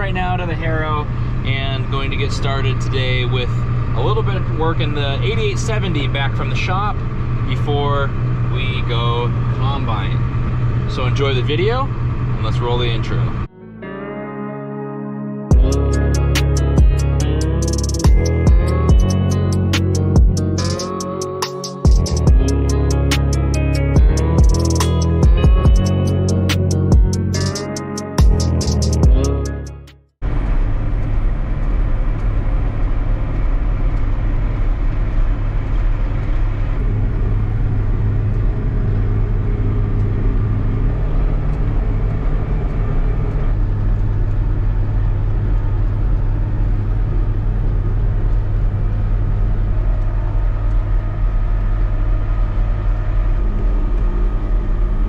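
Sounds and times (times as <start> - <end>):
tractor diesel engine droning: 0.0 - 14.0, 15.5 - 55.0
intro music: 13.5 - 30.1.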